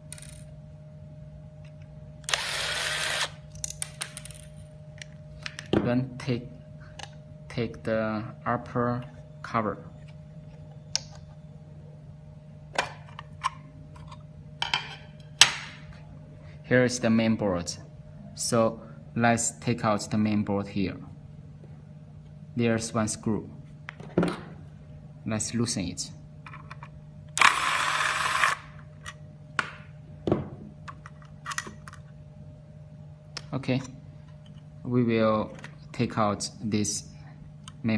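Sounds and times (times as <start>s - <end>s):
power screwdriver whirring: 2.3s - 3.4s.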